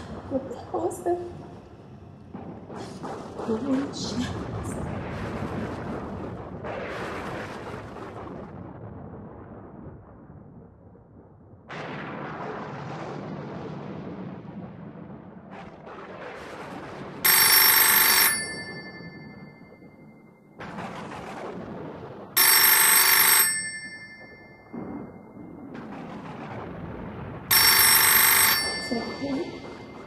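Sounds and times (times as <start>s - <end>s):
telephone bell ringing: 17.2s - 19.8s, 22.4s - 25.1s, 27.5s - 30.0s.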